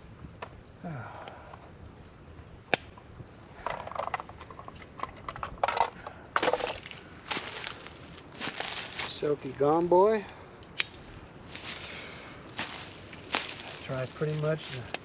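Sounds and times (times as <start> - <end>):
gear rustling and crunching: 3.5 - 9.6, 10.9 - 15.0.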